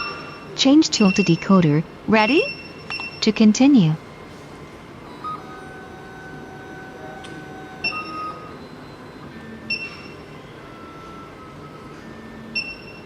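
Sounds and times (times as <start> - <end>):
soft background music: 5.1 - 13.0.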